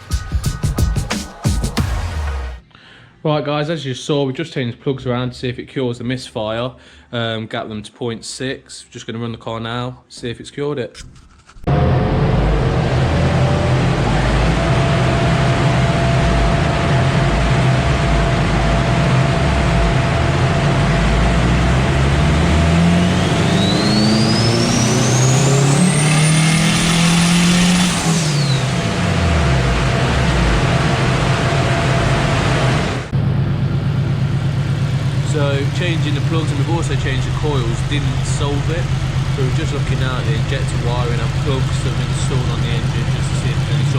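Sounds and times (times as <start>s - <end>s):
high turbo whistle: 11.7s - 33.2s
car engine revving: 11.7s - 43.9s.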